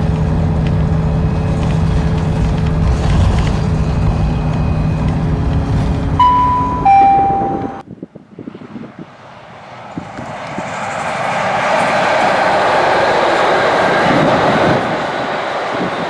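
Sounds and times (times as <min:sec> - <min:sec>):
approaching train rushing: 0:00.0 - 0:07.8, 0:08.8 - 0:16.0
bus engine running: 0:00.0 - 0:07.8
two-note falling chime: 0:06.2 - 0:07.8.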